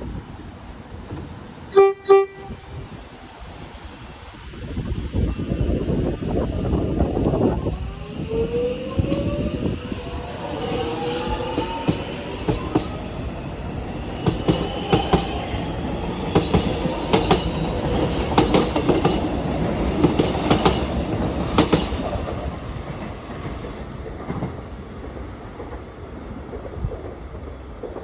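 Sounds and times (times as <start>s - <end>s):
electric train motors whining: 5.4s - 19.2s
train wheels clicking on rail joints: 7.8s - 28.0s.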